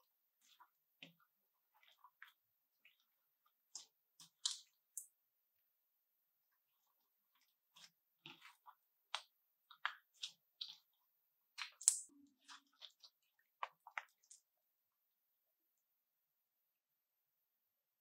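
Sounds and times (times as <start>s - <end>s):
slime crackling and popping: 11.5s - 14.4s.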